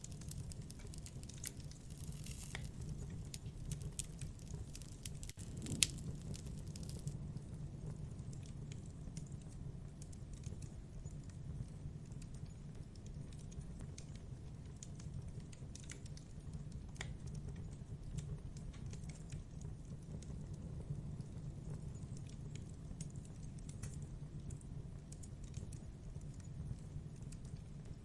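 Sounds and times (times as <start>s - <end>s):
campfire crackling: 0.0s - 7.2s.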